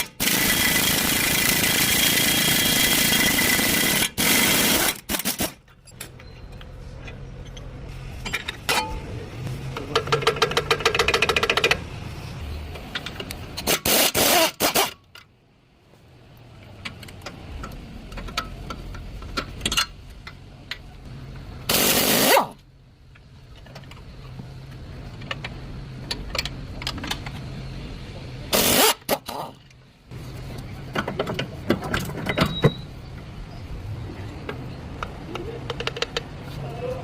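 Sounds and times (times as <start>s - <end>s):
fast mechanical rattle: 0.0s - 5.6s, 9.9s - 11.9s.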